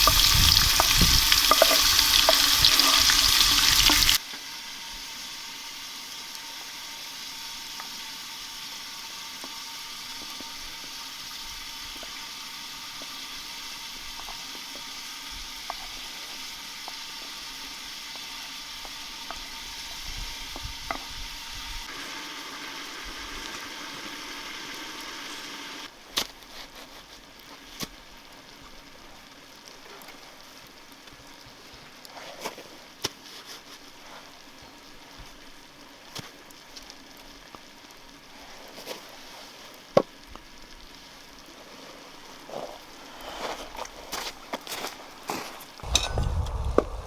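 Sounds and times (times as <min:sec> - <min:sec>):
wood fire crackling: 0:00.0 - 0:04.2, 0:33.2 - 0:47.0
food sizzling in a hot pan: 0:00.0 - 0:26.0.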